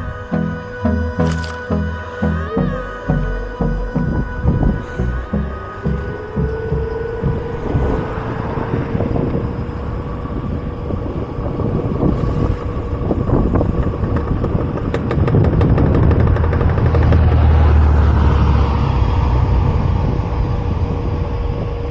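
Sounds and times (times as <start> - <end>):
electric motor whine: 0.0 - 14.1
road and wind rumble: 0.0 - 21.9.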